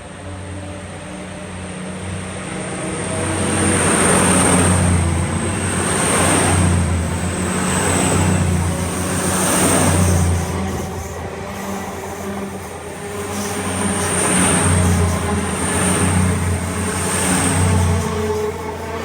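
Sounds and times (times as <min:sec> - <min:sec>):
train wheels rumbling on rails: 0:00.0 - 0:19.0.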